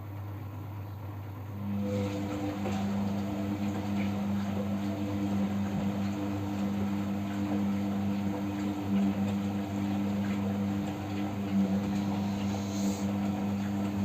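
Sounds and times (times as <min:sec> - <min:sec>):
washing machine motor hum: 0:00.0 - 0:14.0
water hissing: 0:12.0 - 0:13.2.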